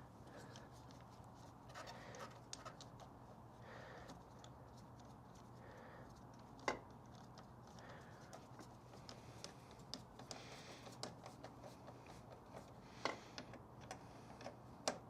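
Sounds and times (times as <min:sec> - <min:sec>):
hand tools clicking and tapping: 0:06.4 - 0:15.0.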